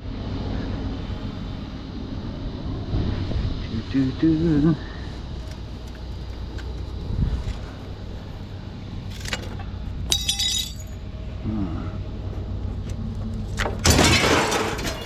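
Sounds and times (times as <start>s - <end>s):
vehicle running low rumble: 0.0s - 14.9s
metallic jingling clink: 10.1s - 11.0s.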